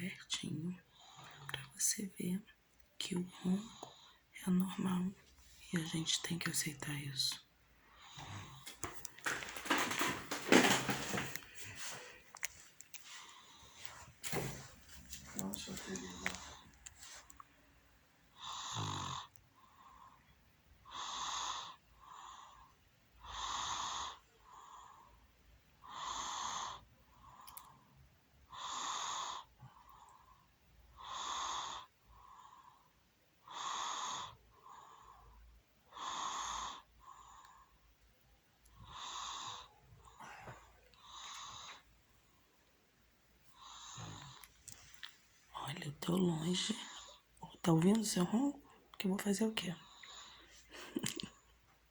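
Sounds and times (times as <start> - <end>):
person snoring: 18.4 - 19.3, 43.6 - 44.4.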